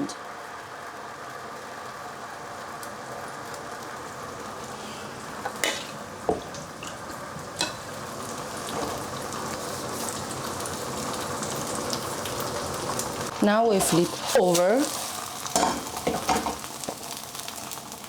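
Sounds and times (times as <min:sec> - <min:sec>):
batter sizzling in a pan: 0:00.0 - 0:18.0.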